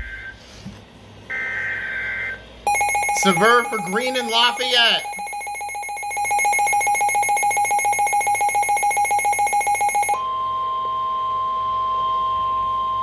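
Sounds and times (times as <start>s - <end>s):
rapidly pulsing electronic beep: 2.7s - 10.2s
steady alarm tone: 2.7s - 10.2s.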